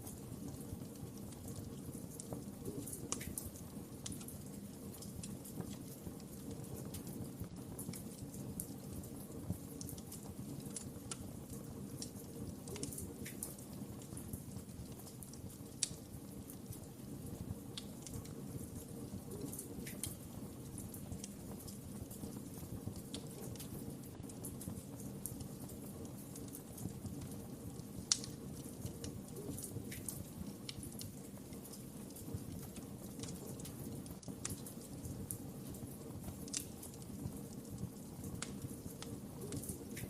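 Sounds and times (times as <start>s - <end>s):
wood fire crackling: 0.0s - 40.0s.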